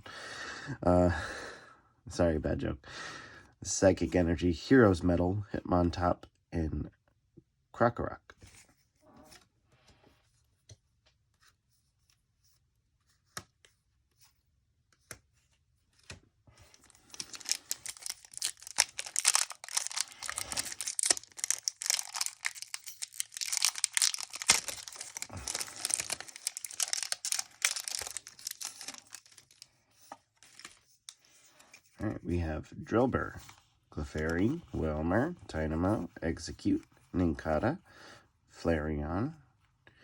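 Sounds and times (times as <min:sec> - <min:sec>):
foil wrapper tearing and crinkling: 0:16.7 - 0:29.8, 0:30.4 - 0:30.8.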